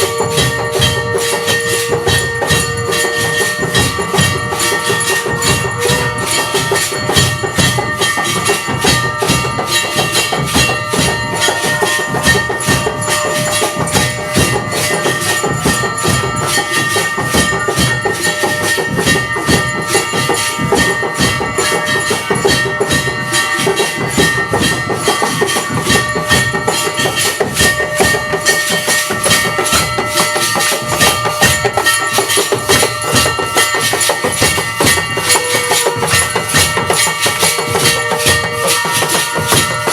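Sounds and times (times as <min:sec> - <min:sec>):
drums beating: 0:00.0 - 0:39.9
metal bells ringing: 0:00.0 - 0:39.9.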